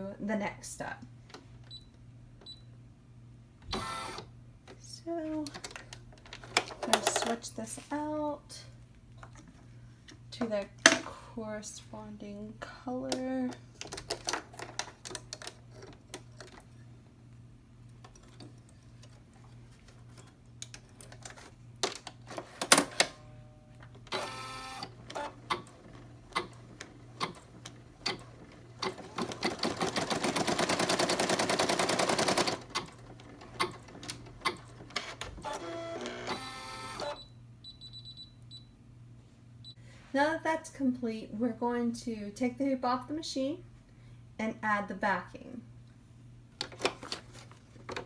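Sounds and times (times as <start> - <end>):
machine beep: 35.7 - 38.7.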